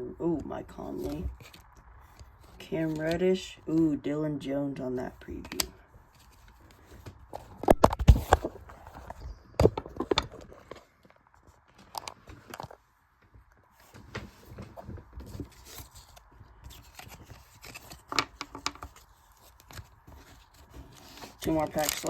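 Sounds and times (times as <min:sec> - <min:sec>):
trading cards being handled: 0:00.8 - 0:03.9, 0:05.2 - 0:10.9, 0:13.9 - 0:22.0.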